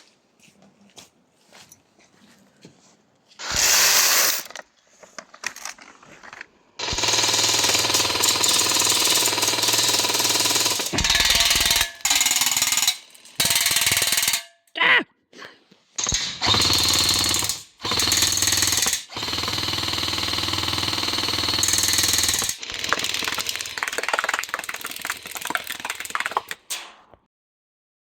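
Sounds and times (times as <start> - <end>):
airsoft machine gun bursts: 3.4 - 4.5, 6.8 - 14.5, 16.0 - 26.9.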